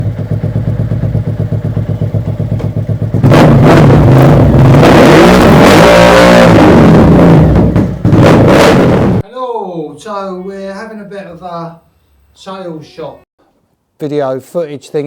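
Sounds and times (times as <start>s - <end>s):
motorcycle engine revving: 0.0s - 9.2s.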